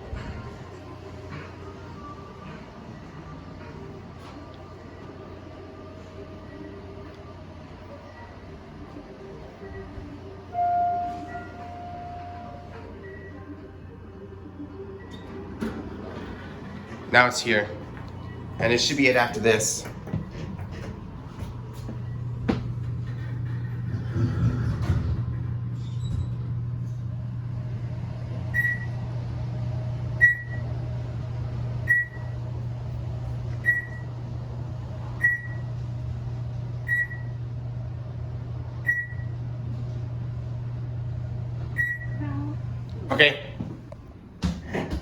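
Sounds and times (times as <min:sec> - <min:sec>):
elevator low hum: 0:00.0 - 0:45.0
short high-pitched beep: 0:10.6 - 0:12.7.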